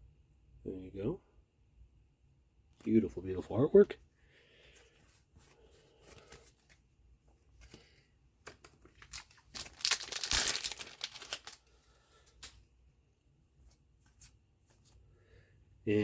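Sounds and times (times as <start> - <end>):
cards and packaging clicking: 7.6 - 12.6
foil wrapper tearing and crinkling: 9.0 - 11.7.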